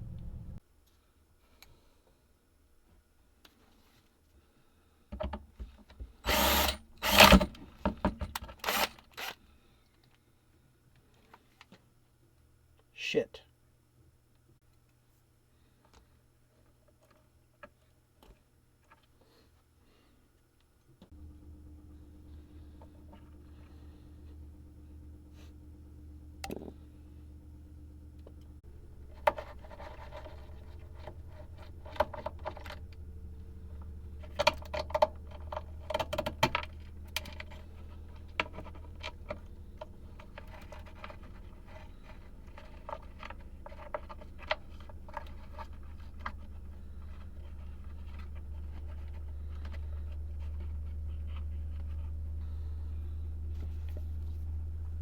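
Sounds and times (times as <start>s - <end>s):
steady low hum: 0.0s - 0.6s, 21.1s - 55.0s.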